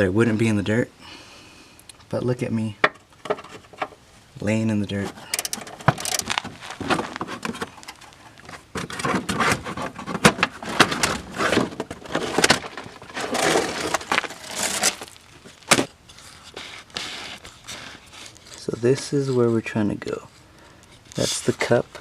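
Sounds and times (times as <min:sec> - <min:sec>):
tools clicking and knocking: 0:05.2 - 0:06.5
scraping on dirt ground: 0:05.7 - 0:20.3.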